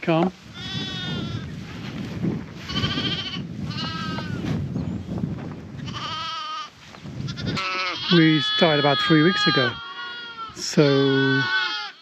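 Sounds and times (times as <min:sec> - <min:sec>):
lambs bleating: 0:00.4 - 0:01.6, 0:02.6 - 0:04.5, 0:05.8 - 0:12.0.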